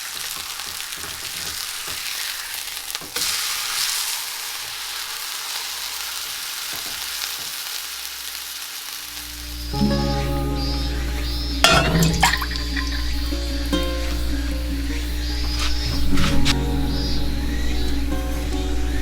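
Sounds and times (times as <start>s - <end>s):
steak sizzling in a frying pan: 0.0s - 9.8s.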